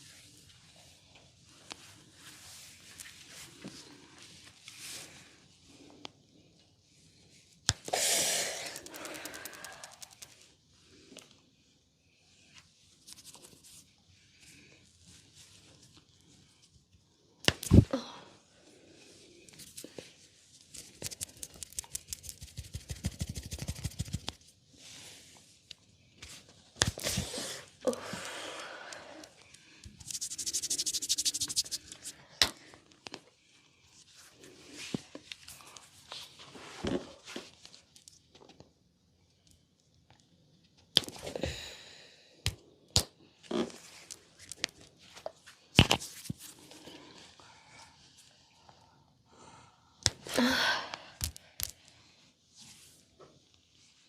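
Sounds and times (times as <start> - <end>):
hands rubbing skin and hair: 8.1 - 10.4, 19.5 - 24.4, 29.9 - 32.3.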